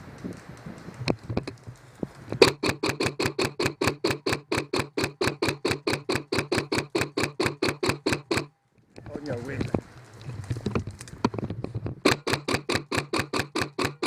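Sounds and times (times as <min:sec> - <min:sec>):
airsoft gun firing: 0:02.4 - 0:08.5, 0:12.0 - 0:14.0.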